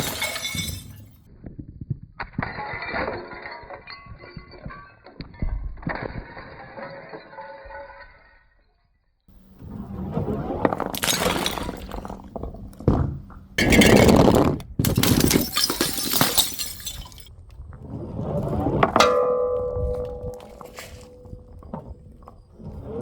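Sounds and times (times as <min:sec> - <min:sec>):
glass bottles shattering: 0:00.0 - 0:01.3, 0:02.4 - 0:08.1, 0:10.4 - 0:17.3, 0:19.0 - 0:22.4.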